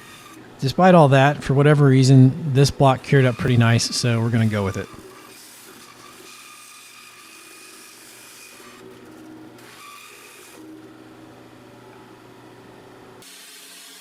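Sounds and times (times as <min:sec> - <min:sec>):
small motor humming: 0:03.0 - 0:10.9, 0:13.2 - 0:14.0.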